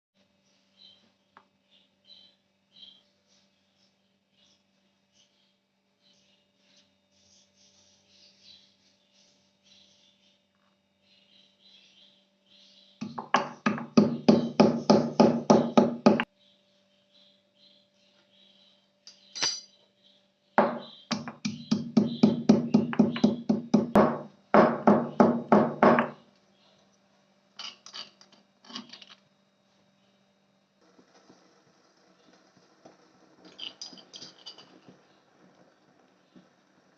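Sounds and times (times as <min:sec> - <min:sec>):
faint steady hum: 0:00.2 - 0:36.9
rapid knocking: 0:13.0 - 0:16.3.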